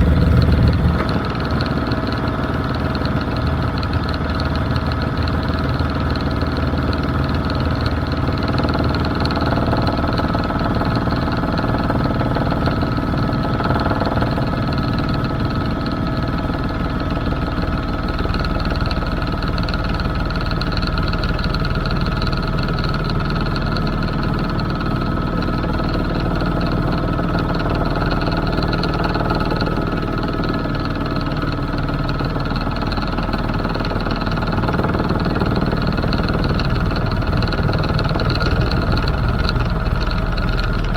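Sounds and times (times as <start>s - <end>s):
high steady whine: 0.0s - 2.0s
helicopter engine and rotor drone: 0.0s - 40.9s.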